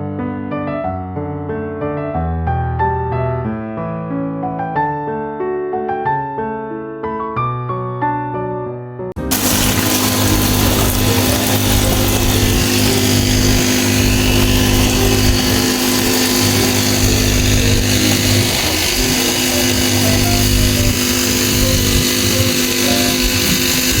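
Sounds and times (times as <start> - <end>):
small petrol engine running: 9.2 - 24.0.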